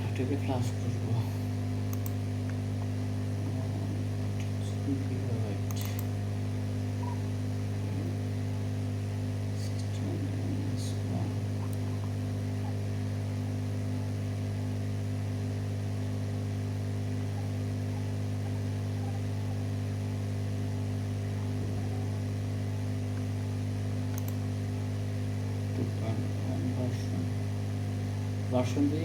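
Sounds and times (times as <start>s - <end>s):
electrical mains hum: 0.0s - 29.0s
faint click: 1.9s - 2.6s, 24.1s - 24.4s.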